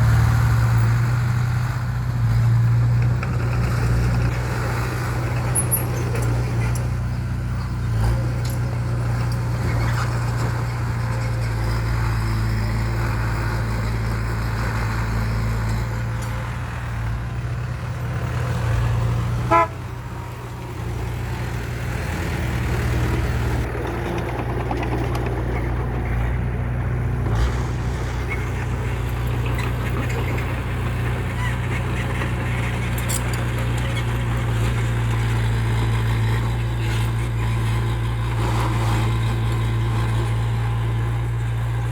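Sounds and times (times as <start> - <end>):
heavy vehicle engine humming: 0.0 - 41.9
vehicle horn toot: 19.5 - 20.1.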